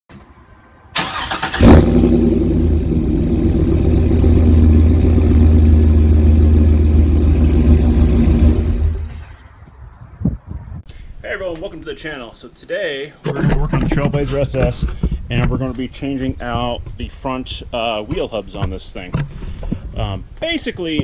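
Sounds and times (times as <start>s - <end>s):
engine starter cranking: 1.0s - 2.2s
car engine idling: 1.0s - 9.2s.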